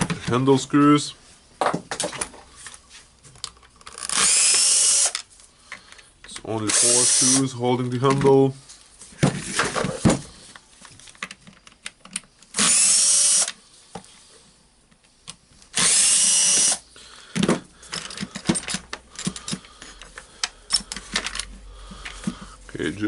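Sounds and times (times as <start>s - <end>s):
electric power driver running: 15.8s - 16.8s.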